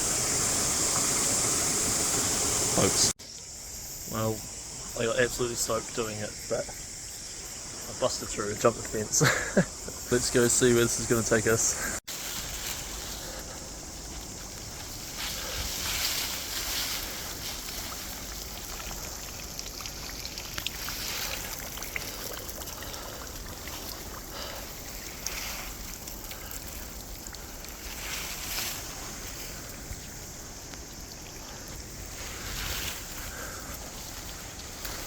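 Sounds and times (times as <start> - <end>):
running water rushing: 0.0 - 3.2, 10.1 - 35.0.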